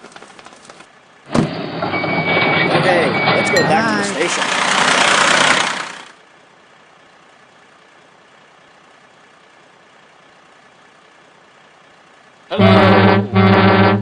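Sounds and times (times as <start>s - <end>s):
toy fire truck engine sound: 3.7s - 6.2s.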